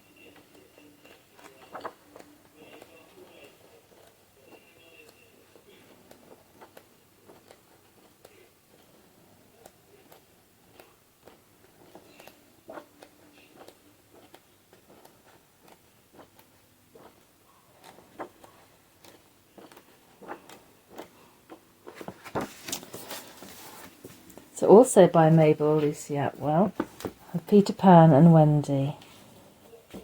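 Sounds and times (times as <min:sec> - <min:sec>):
paper pages rustling: 0:00.4 - 0:04.7, 0:10.1 - 0:24.5, 0:26.6 - 0:27.3.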